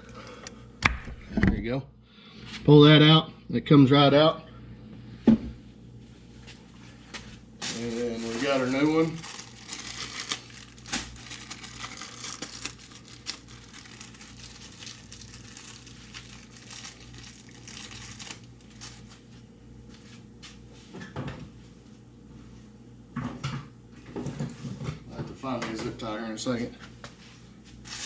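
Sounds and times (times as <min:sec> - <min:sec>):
packaging crinkling: 0:07.6 - 0:19.2.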